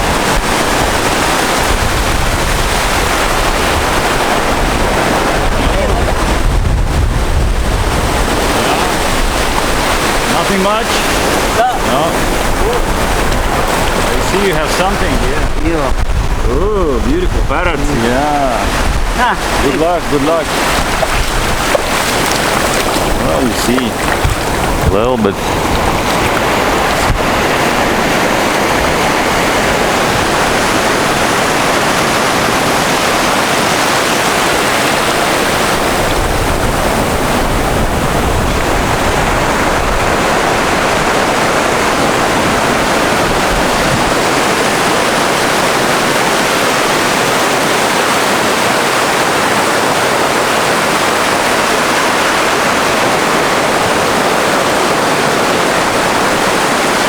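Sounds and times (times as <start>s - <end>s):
wind rushing: 0.0s - 45.1s
sea water rushing: 0.0s - 57.0s.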